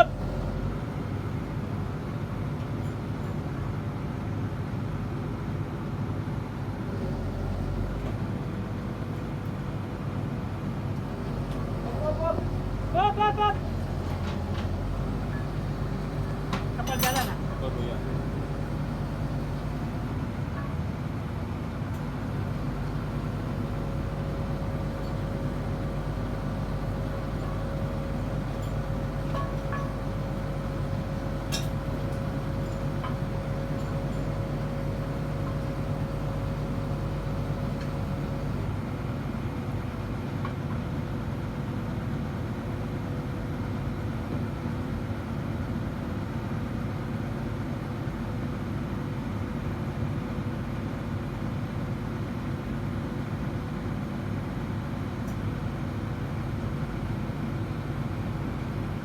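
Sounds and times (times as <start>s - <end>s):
engine drone: 0.0s - 1.3s, 6.9s - 8.6s, 11.0s - 20.4s, 22.3s - 38.8s
light metallic clinks: 14.6s - 20.1s.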